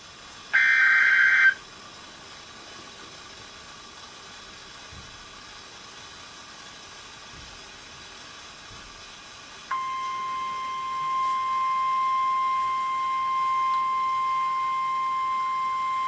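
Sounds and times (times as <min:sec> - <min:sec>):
radio hiss: 0:00.5 - 0:01.7
single-pitch alert tone: 0:09.7 - 0:16.0.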